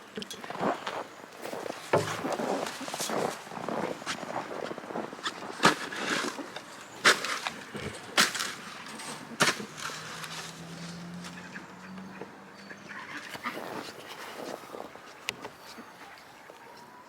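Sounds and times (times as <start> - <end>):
crunches in snow: 0.5 - 11.4.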